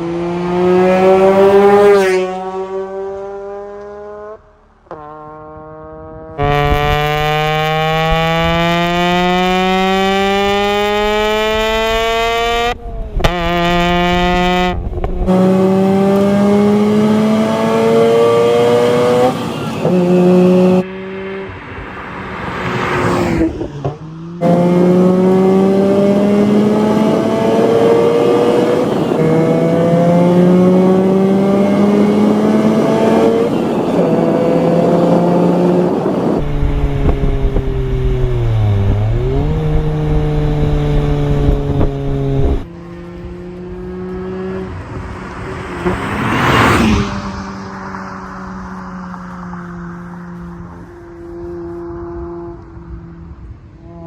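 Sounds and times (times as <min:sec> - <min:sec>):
rotary engine accelerating hard: 0:00.0 - 0:54.0.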